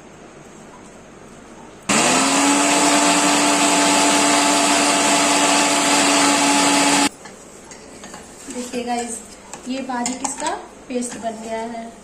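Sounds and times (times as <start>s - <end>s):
electric mixer grinder running: 1.9s - 7.1s.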